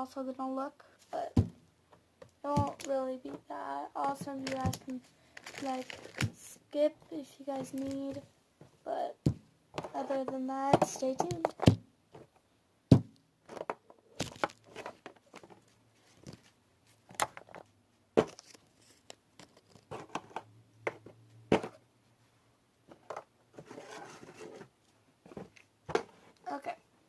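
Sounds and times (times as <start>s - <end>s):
items clicking and knocking: 1.4s - 6.4s, 7.6s - 8.2s, 9.3s - 21.8s, 22.9s - 24.7s
packaging crinkling and tearing: 4.3s - 6.4s, 7.7s - 8.1s, 14.2s - 14.8s.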